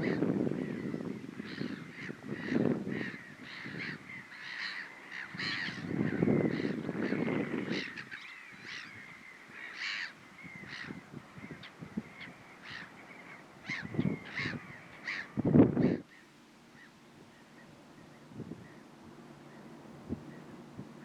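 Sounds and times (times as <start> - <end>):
wind buffeting microphone: 0.0 - 4.3, 5.1 - 9.2, 10.2 - 16.1, 18.0 - 18.8, 19.4 - 21.0
crows cawing: 0.8 - 17.6.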